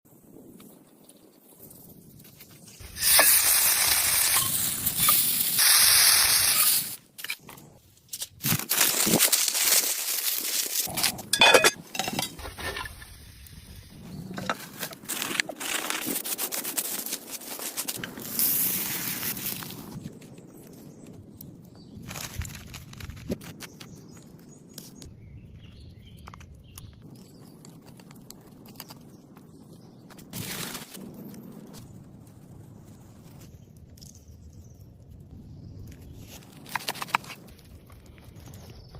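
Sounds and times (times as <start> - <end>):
loud cooking hiss: 2.8 - 7.0.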